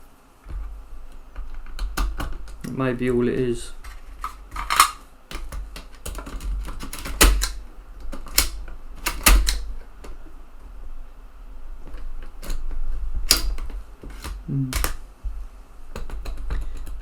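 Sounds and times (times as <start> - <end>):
floppy drive eject clicks: 3.8 - 10.2, 12.3 - 15.0.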